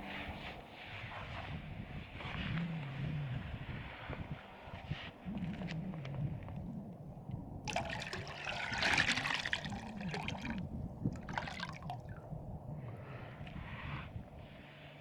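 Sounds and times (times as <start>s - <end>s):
water splashing and pouring: 7.7s - 12.2s.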